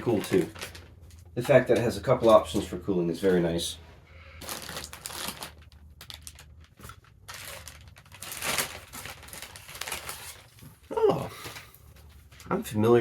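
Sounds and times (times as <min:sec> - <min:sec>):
packaging crinkling: 0:00.0 - 0:01.6, 0:04.4 - 0:12.6.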